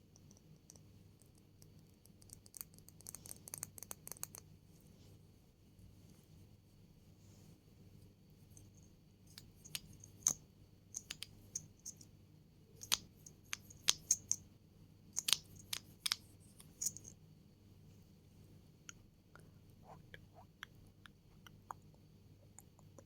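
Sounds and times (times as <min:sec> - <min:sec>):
crisp clicks and taps: 0:11.0 - 0:12.0, 0:12.8 - 0:14.4, 0:15.2 - 0:17.1, 0:20.6 - 0:23.0.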